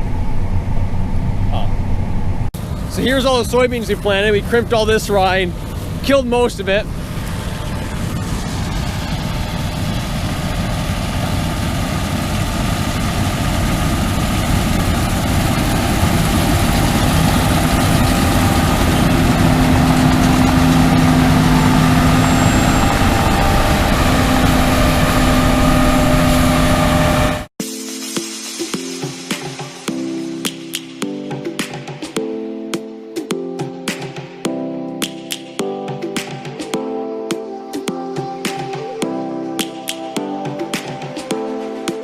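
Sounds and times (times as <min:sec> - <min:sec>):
combine harvester drone: 0:00.0 - 0:27.5
steady low hum: 0:00.0 - 0:27.5.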